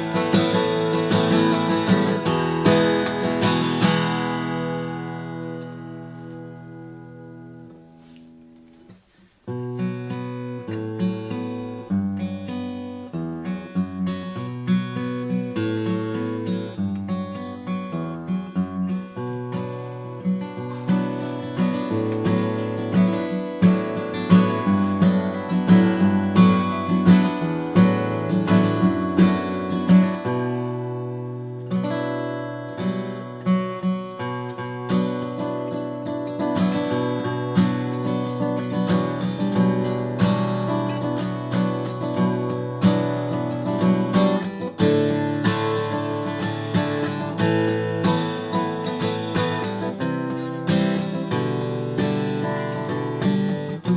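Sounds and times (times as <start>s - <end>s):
acoustic guitar playing: 0.0s - 53.9s.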